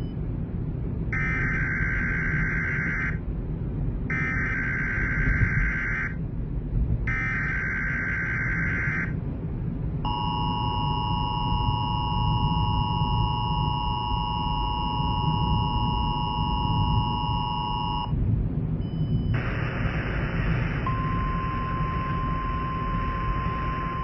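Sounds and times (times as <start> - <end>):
steady low noise: 0.0 - 24.0
screeching digital data tones: 1.2 - 3.2, 4.1 - 6.2, 7.1 - 9.2, 10.1 - 18.1, 20.8 - 24.0
two-tone attention signal: 10.1 - 18.1, 20.8 - 24.0.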